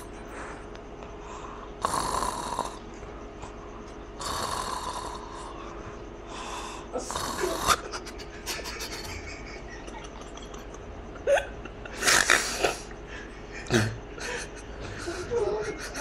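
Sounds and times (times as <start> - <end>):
man snoring: 1.8 - 2.8, 4.2 - 5.6, 6.8 - 7.9.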